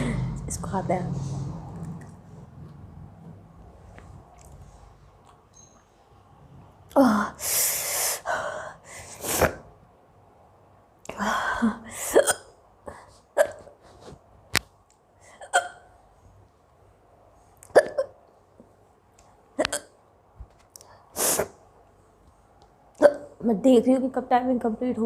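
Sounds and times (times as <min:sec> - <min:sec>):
woman hiccupping: 0:15.4 - 0:15.9, 0:19.6 - 0:20.0.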